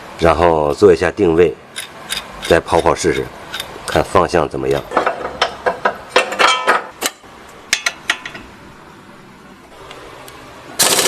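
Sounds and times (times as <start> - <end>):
metal tools clinking and knocking: 4.8 - 6.9.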